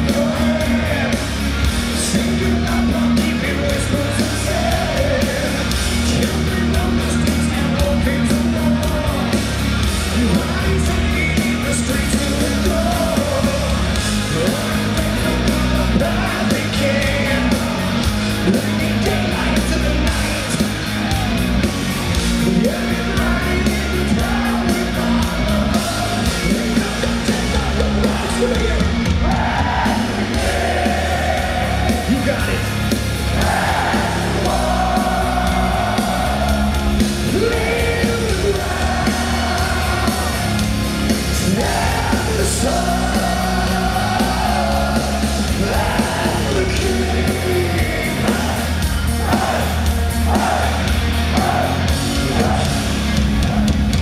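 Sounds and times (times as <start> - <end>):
heavy metal band playing live: 0.0 - 54.0
person singing and shouting: 33.4 - 40.6, 41.3 - 53.7.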